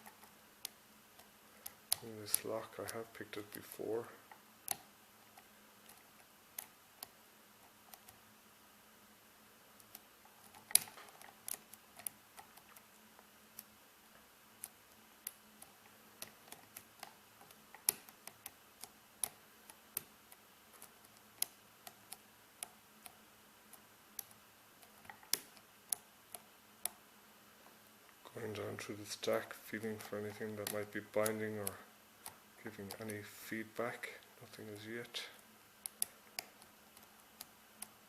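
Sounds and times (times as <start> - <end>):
lock pick metallic clicks: 9.8 - 12.2.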